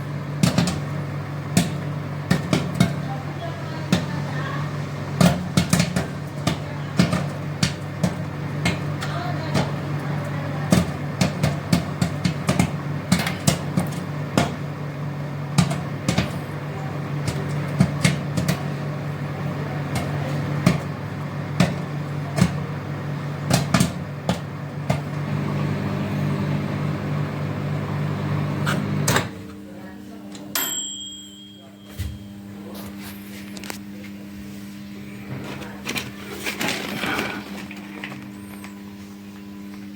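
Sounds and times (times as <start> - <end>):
popcorn popping: 0.0 - 25.4
microwave oven humming: 0.0 - 39.9.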